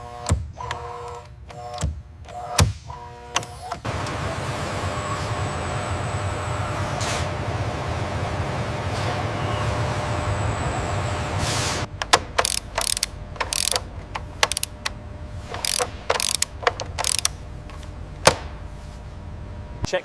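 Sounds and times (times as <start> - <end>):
sharp clicks and ratchet snaps: 11.9 - 17.9.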